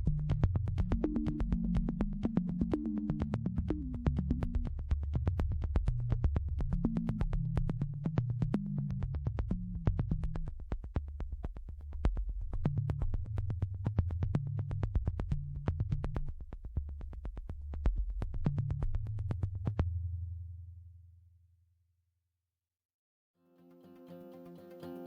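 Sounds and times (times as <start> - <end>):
synthesizer bass line: 0.0 - 10.6
quick ticking beat: 0.0 - 19.2.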